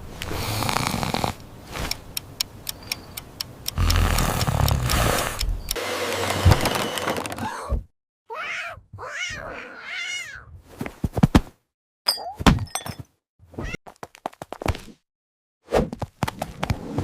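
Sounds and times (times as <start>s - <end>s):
sharp clicks: 1.8s - 7.3s
vacuum cleaner motor running: 4.9s - 7.4s.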